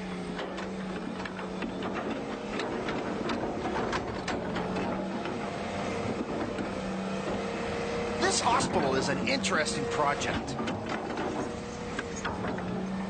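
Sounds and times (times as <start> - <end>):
machine clicks and knocks: 0.0 - 7.4, 10.3 - 13.0
excavator engine running: 0.0 - 13.0.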